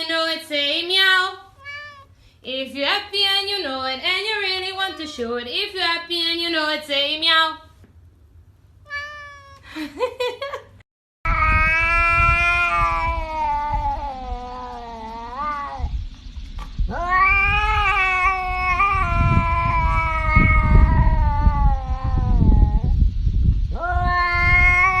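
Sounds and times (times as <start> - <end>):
cat yowling: 1.5 - 2.2, 8.9 - 9.7, 11.3 - 15.9, 16.9 - 22.9, 23.8 - 25.0.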